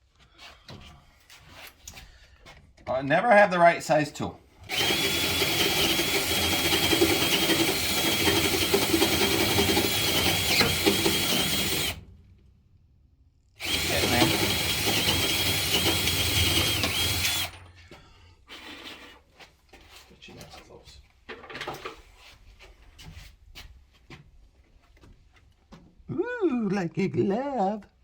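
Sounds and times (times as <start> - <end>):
power drill boring into door: 4.6 - 12.1, 13.6 - 17.7.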